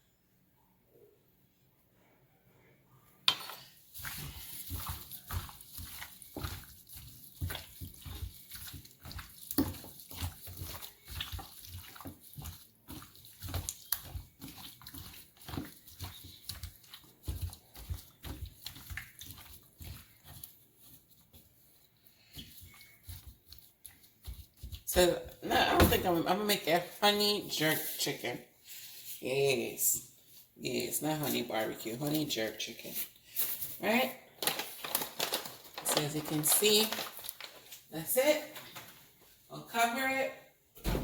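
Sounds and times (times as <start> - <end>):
hands squelching raw chicken: 3.9 - 27.1.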